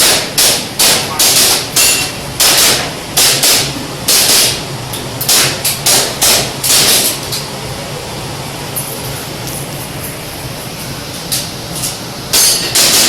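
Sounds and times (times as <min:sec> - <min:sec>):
airsoft pistol shots: 0:00.0 - 0:04.6, 0:12.8 - 0:13.0.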